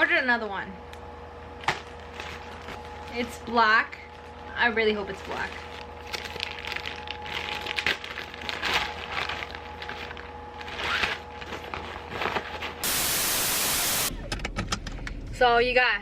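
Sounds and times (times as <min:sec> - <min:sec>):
plastic package crinkling: 0:04.1 - 0:12.5
burst of hiss: 0:12.8 - 0:14.1.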